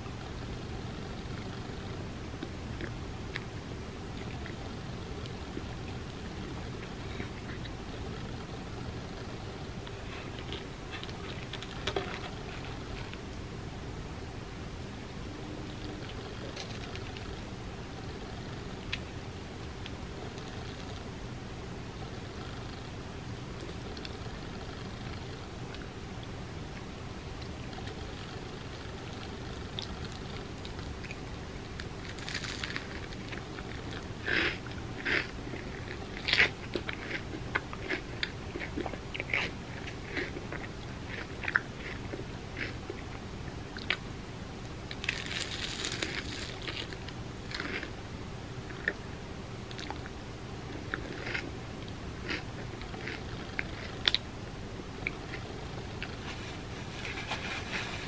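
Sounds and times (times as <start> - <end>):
chewing crispy food: 15.6 - 21.1, 23.6 - 44.0, 44.9 - 48.0, 49.6 - 54.3
sharp crunches and crackles: 27.4 - 40.4, 44.9 - 47.9.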